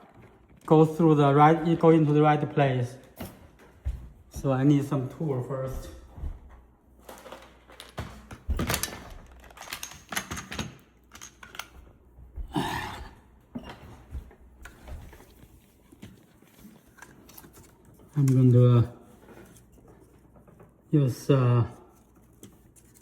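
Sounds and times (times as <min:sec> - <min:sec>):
plastic parts clicking and tapping: 0:07.0 - 0:11.8.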